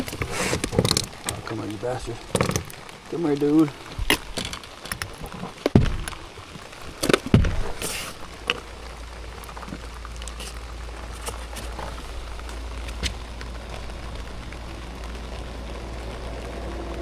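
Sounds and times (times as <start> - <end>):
rain pattering on surfaces: 0.0 - 17.0
knocks: 5.7 - 6.2.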